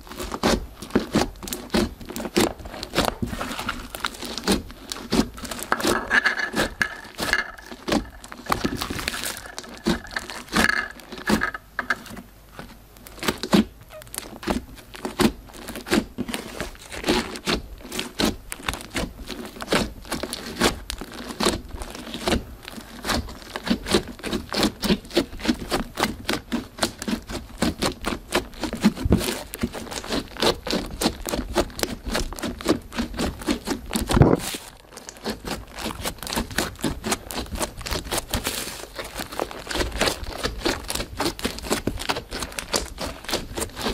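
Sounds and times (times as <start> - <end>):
slime sticky clicks and crackles: 34.8 - 43.9.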